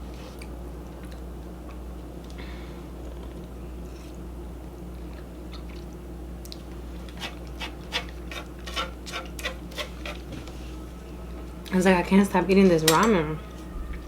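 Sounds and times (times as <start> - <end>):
low hum: 10.4 - 14.0.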